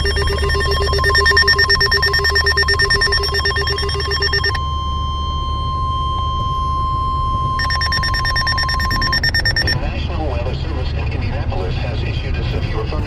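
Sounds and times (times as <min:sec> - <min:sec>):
alert attention tone: 0:00.0 - 0:09.8
electronic trilling ring: 0:00.0 - 0:09.8.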